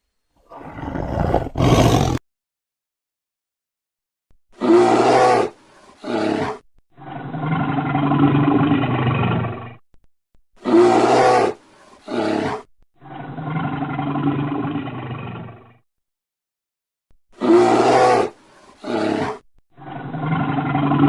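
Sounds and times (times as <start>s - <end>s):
big cat roaring: 0.5s - 2.2s, 4.6s - 9.8s, 10.6s - 15.8s, 17.4s - 21.0s.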